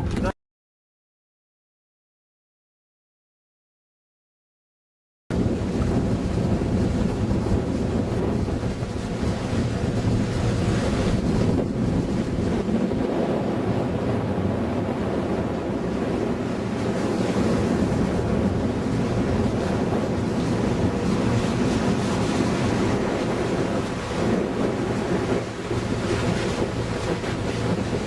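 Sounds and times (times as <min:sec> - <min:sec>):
wind buffeting microphone: 0:05.3 - 0:28.0
rushing water: 0:05.4 - 0:28.0.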